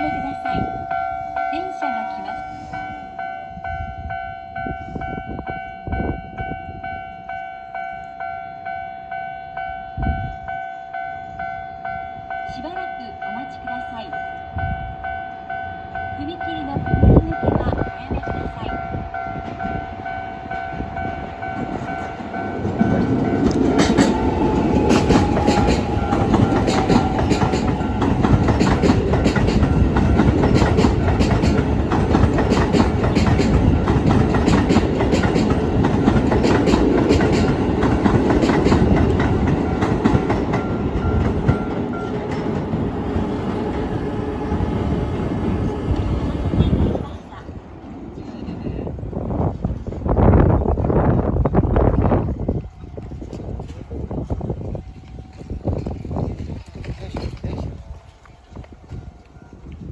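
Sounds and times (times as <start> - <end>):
level crossing warning alarm: 0.0 - 45.0
train whine falling in pitch: 18.4 - 46.8
train wheels clattering over rail joints: 21.1 - 44.5.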